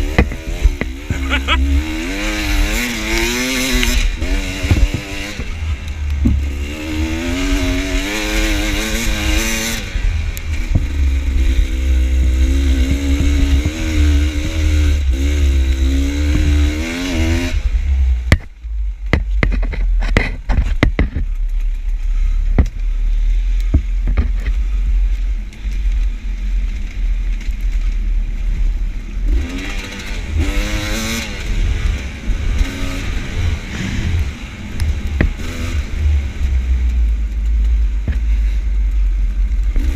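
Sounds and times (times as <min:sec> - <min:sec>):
sharp knocks and clatter: 0:00.0 - 0:01.2, 0:02.7 - 0:05.6, 0:18.3 - 0:21.9
dirt bike engine revving: 0:00.0 - 0:18.4, 0:29.2 - 0:37.4, 0:39.7 - 0:39.9.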